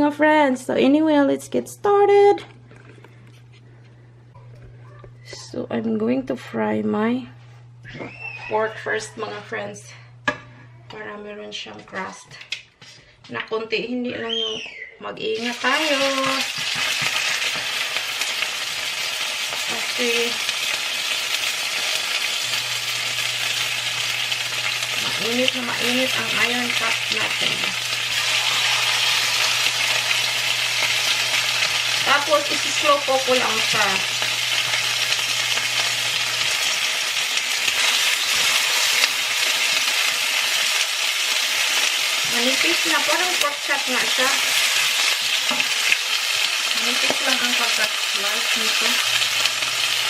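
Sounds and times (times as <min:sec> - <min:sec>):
meat sizzling in hot oil: 0:15.3 - 0:50.0.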